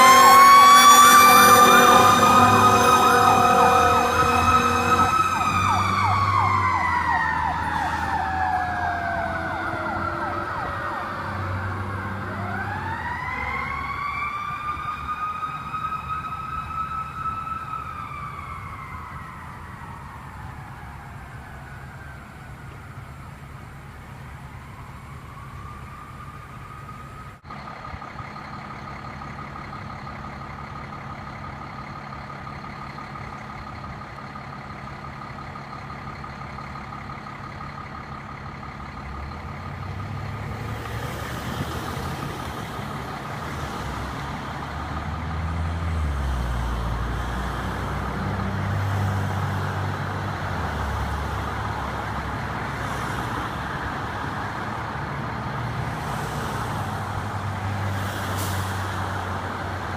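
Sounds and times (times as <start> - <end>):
fire truck engine rumble: 0.0 - 59.9.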